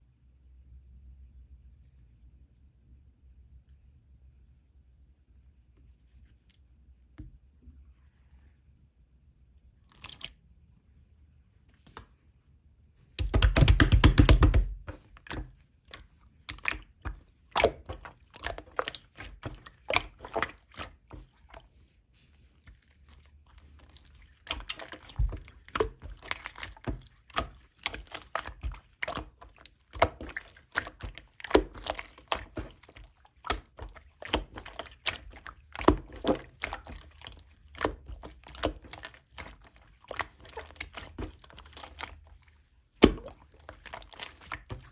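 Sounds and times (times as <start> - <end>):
sticky slime clicks and pops: 13.2 - 14.7
slime crackling: 13.2 - 21.8, 22.7 - 44.9.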